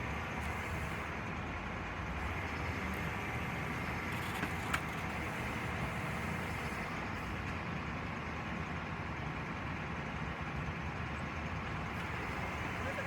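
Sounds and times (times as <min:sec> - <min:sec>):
heavy vehicle engine running: 0:00.0 - 0:13.0.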